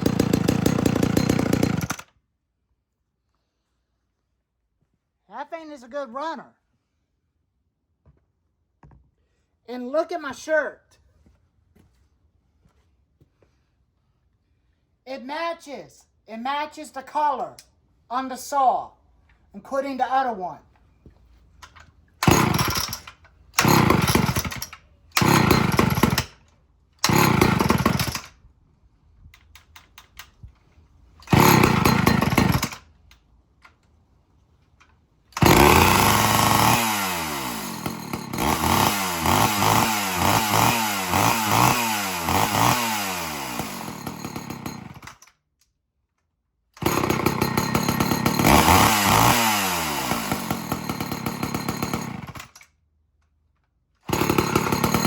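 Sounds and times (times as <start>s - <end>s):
chainsaw engine starting and revving: 0.0s - 2.2s, 22.2s - 26.4s, 27.0s - 28.4s, 31.2s - 32.9s, 35.4s - 45.2s, 46.8s - 52.6s, 54.0s - 55.0s.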